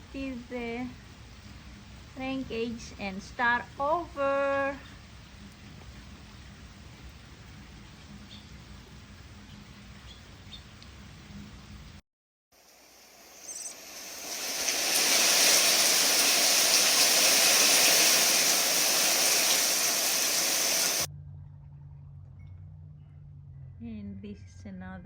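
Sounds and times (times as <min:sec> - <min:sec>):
heavy rain downpour: 0:12.8 - 0:21.1.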